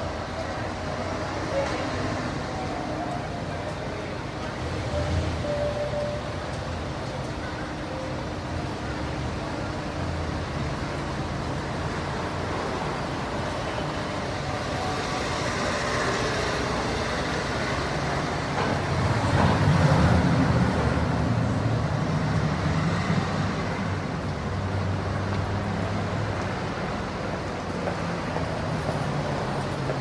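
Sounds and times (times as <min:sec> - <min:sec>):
low rumble of road traffic: 0:00.0 - 0:30.0.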